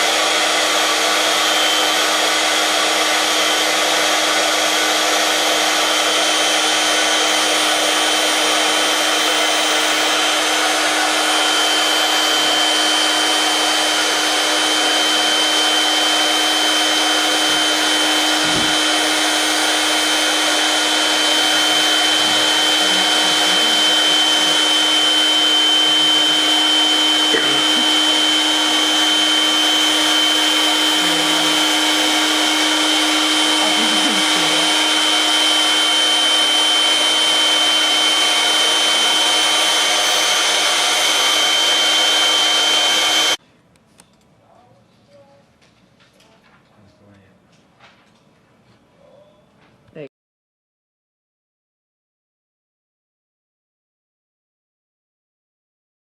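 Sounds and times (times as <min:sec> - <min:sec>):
electric air pump running: 0:00.0 - 0:43.4.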